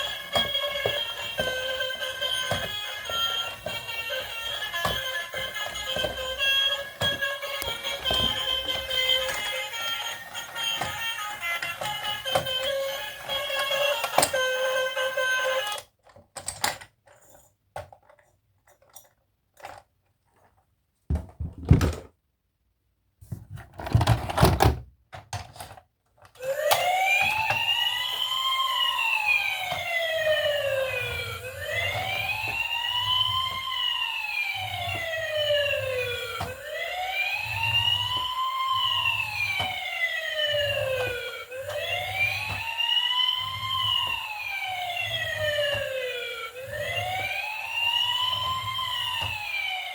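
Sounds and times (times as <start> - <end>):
toy siren wailing: 0.0 - 15.9, 26.4 - 49.9.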